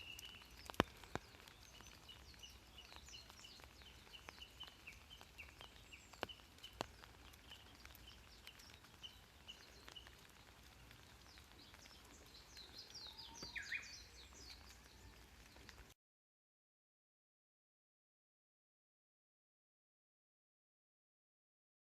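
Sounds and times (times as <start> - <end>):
faint bird chirping: 0.0 - 15.9.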